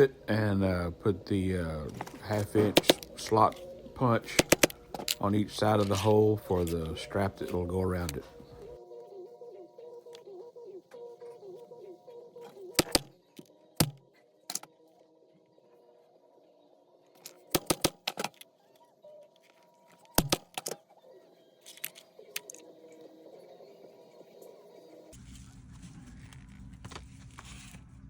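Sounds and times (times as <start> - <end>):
leather punching knocks and clicks: 20.1 - 20.8.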